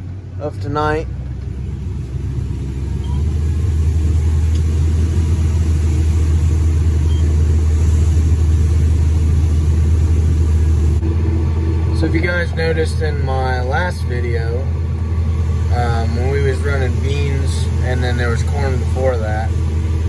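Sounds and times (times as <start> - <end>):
vehicle engine rumbling: 0.0 - 20.0.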